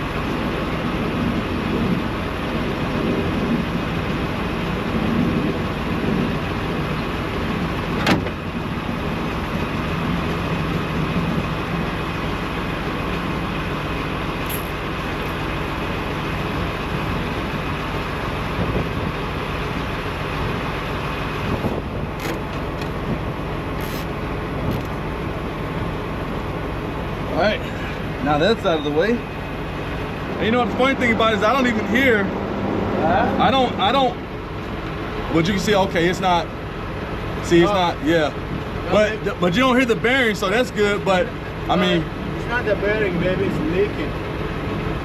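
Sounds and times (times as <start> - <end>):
diesel truck engine idling: 0.0 - 45.0
sharp metallic click: 14.4 - 14.8.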